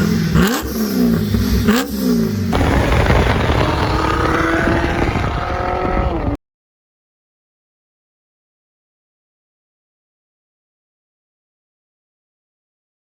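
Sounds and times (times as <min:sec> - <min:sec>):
car engine revving: 0:00.0 - 0:06.4.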